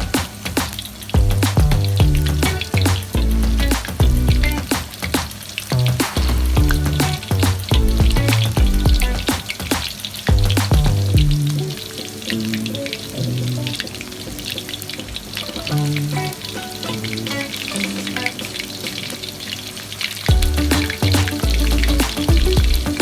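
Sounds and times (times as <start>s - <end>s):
background music with bass: 0.0s - 9.5s, 10.3s - 11.8s, 20.3s - 23.0s.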